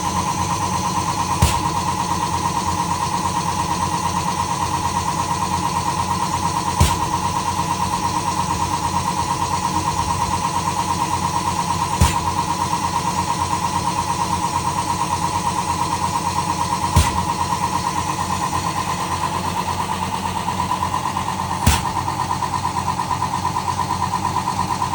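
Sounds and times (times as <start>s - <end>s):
diaphragm pump running: 0.0s - 24.9s
sharp knock: 1.4s - 1.9s, 6.8s - 7.2s, 12.0s - 12.4s, 17.0s - 17.4s, 21.7s - 22.1s.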